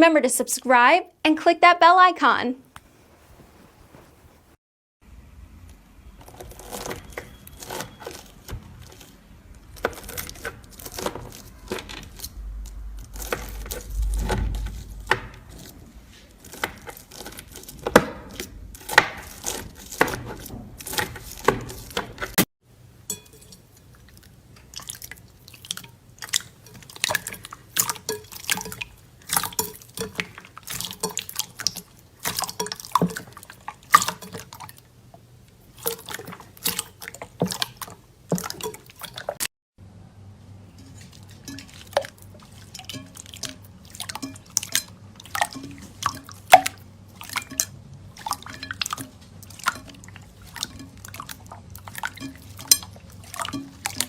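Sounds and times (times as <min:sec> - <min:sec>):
slime squelching: 0:23.8 - 0:34.9, 0:35.6 - 0:39.4, 0:40.8 - 0:54.0.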